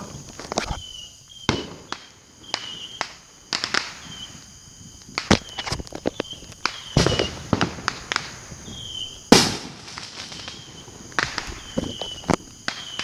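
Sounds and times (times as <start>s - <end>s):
fireworks popping and crackling: 0.0s - 13.0s
loud echoing firework bang: 6.7s - 12.1s.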